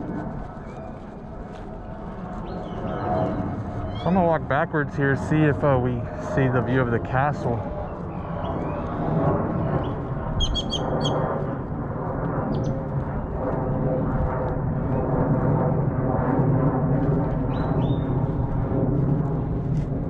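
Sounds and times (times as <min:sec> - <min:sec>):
bird chirping: 0:10.4 - 0:11.2.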